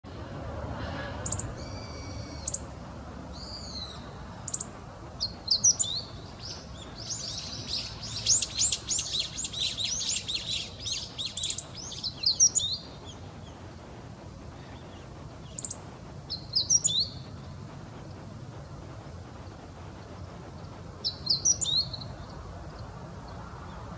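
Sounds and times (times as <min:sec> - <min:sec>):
bird singing: 0:01.2 - 0:02.7, 0:03.4 - 0:13.6, 0:14.6 - 0:17.3, 0:21.0 - 0:22.3.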